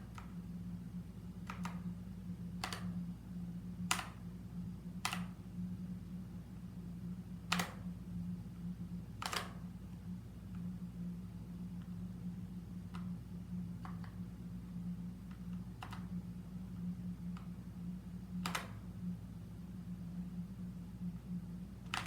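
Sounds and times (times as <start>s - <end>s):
steady low hum: 0.0s - 22.0s
mechanical keyboard key clicks: 2.6s - 2.9s, 18.4s - 18.7s.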